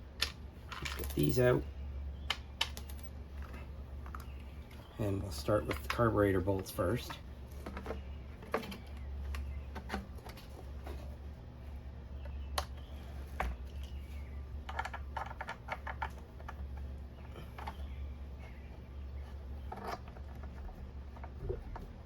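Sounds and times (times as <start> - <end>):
low steady hum: 0.0 - 22.0
hand tools clicking on metal parts: 0.2 - 1.5.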